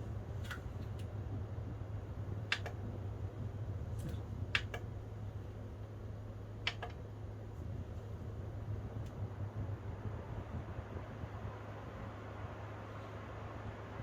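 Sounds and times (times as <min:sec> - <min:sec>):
electric fan running: 0:00.0 - 0:14.0
sharp clicks: 0:02.5 - 0:02.9, 0:04.0 - 0:04.9, 0:06.6 - 0:07.0.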